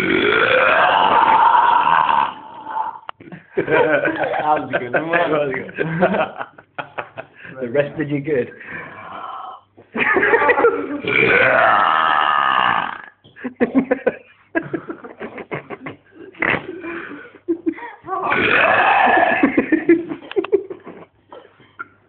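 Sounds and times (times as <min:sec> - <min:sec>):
man burping: 0:00.0 - 0:03.3, 0:08.6 - 0:09.7, 0:11.0 - 0:13.2, 0:18.3 - 0:19.6.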